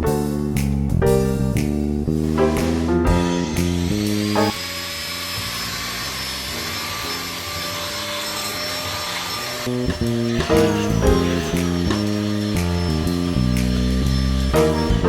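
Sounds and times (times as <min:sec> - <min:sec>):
background music: 0:00.0 - 0:04.6, 0:09.9 - 0:15.0
vacuum cleaner whirring: 0:02.6 - 0:15.0.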